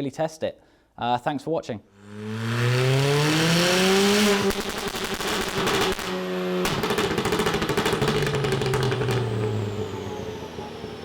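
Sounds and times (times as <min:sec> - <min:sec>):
car engine revving: 0:01.9 - 0:11.0
exhaust pops and crackles: 0:04.2 - 0:09.9.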